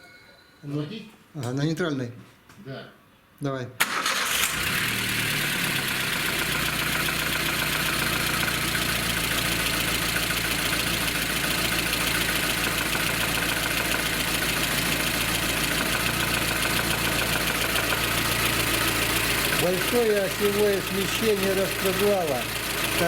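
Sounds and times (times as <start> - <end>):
car engine starting and idling: 3.8 - 23.0
engine rattle: 3.8 - 23.0.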